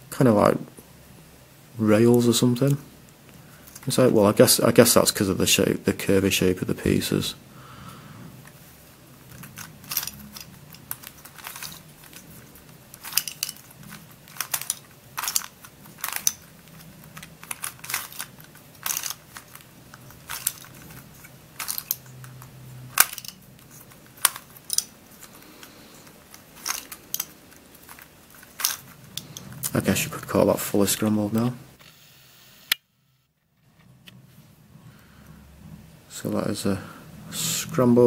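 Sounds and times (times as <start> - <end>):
plastic puzzle pieces clicking: 9.2 - 29.8.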